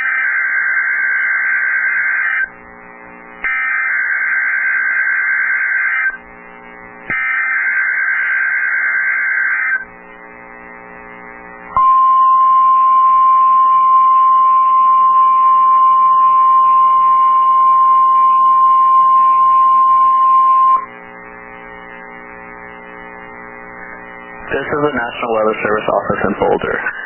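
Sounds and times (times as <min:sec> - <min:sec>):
high alarm tone: 0:00.0 - 0:02.5, 0:03.4 - 0:06.2, 0:07.1 - 0:09.8, 0:11.8 - 0:20.9
low radio hum: 0:02.4 - 0:03.6, 0:06.1 - 0:07.7, 0:09.8 - 0:27.0.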